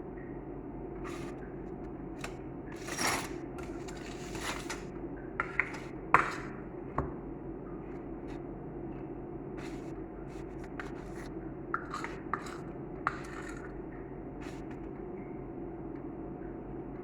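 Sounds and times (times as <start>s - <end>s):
steady low hum: 0.0s - 17.0s
spoon scraping a dish: 1.1s - 1.4s, 2.2s - 6.6s, 9.6s - 13.8s.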